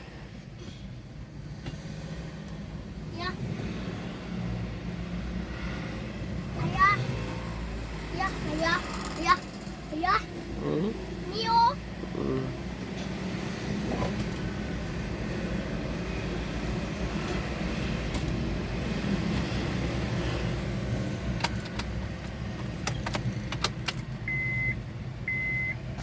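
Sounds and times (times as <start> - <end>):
repeating beep: 24.3 - 25.8.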